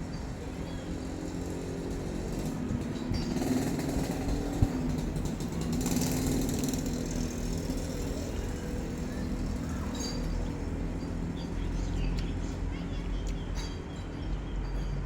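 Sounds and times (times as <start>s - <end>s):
small engine running: 0.5s - 10.8s.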